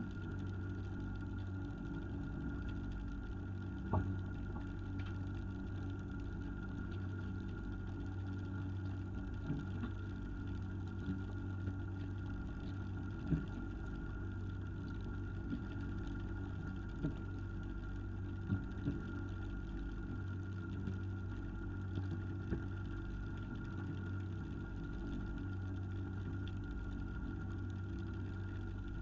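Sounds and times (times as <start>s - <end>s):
faint whine: 0.0s - 29.0s.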